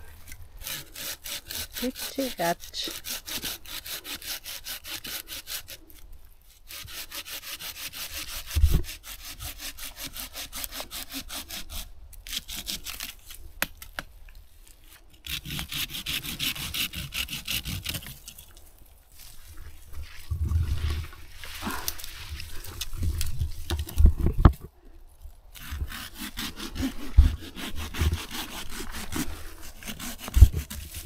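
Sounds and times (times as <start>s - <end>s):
hand saw cutting wood: 0.3s - 5.9s, 6.6s - 13.2s, 15.2s - 18.4s, 25.6s - 31.0s.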